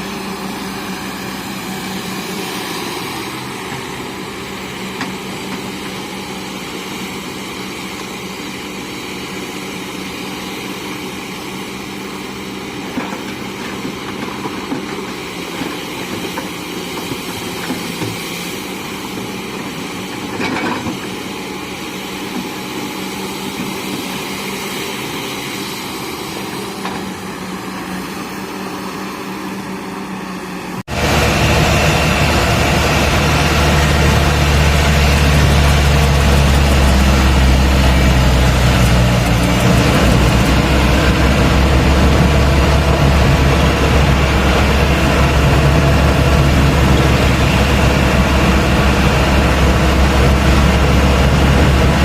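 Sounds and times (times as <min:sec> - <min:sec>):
diesel engine idling: 0:25.9 - 0:52.0.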